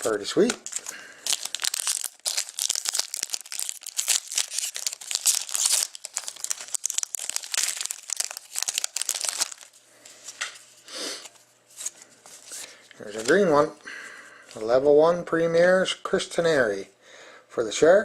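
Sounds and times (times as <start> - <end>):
plastic packaging crinkling: 0.0 - 10.8.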